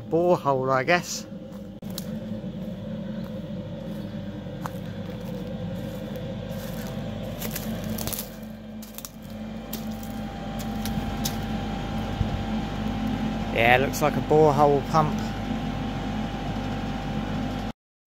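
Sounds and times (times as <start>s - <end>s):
pump machinery humming: 0.0s - 17.7s.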